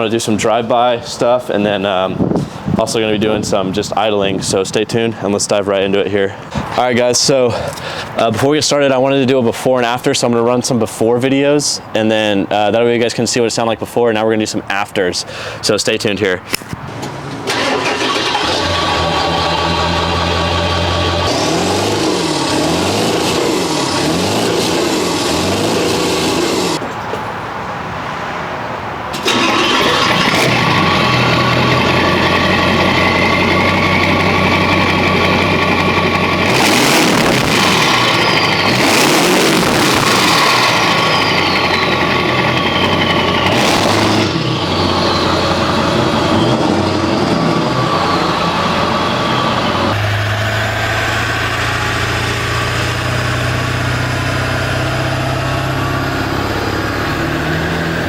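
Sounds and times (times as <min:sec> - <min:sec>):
diesel engine running: 0:00.0 - 0:08.4, 0:17.0 - 0:27.0, 0:29.1 - 0:58.0
engine revving: 0:17.4 - 0:26.8, 0:29.1 - 0:58.0
falling turbo whistle: 0:29.2 - 0:52.0.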